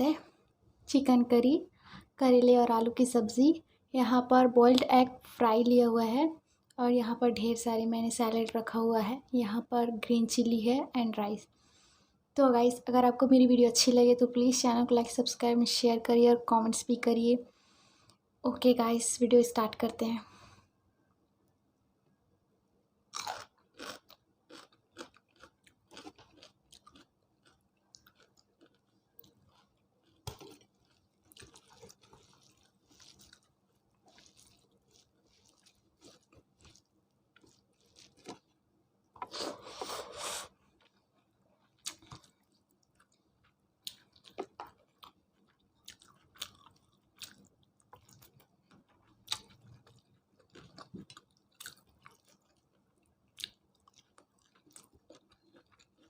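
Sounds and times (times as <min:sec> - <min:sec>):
person chewing and crunching: 0:23.1 - 0:38.6, 0:39.2 - 0:56.0.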